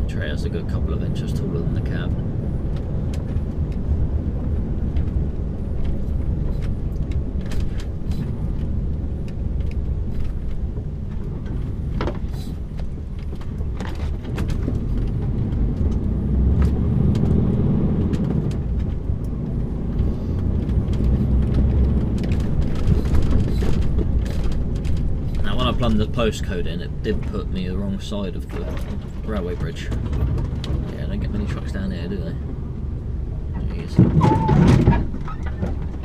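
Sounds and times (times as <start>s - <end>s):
lorry engine in low gear: 0.0s - 36.0s
road noise: 0.0s - 36.0s.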